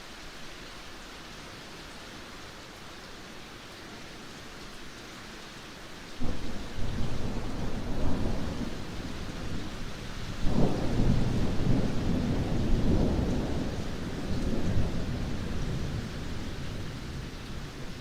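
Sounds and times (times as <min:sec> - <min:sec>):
steady rain: 0:00.0 - 0:18.0
thunder rumbling: 0:06.2 - 0:18.0.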